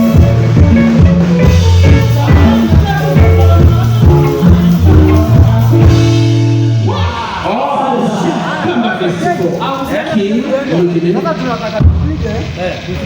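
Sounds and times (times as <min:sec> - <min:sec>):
live band music through speakers: 0:00.0 - 0:07.2, 0:09.3 - 0:13.0
bass guitar line: 0:00.0 - 0:07.5.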